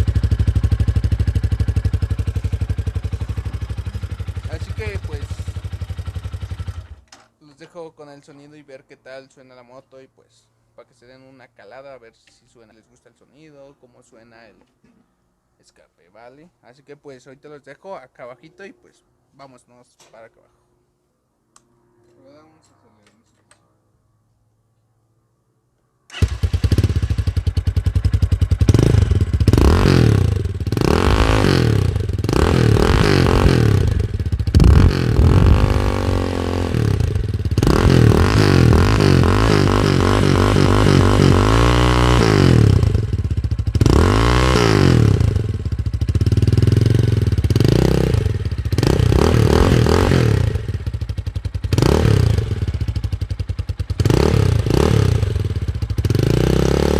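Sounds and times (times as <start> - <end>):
motorcycle engine revving: 0.0 - 7.1, 26.1 - 56.9.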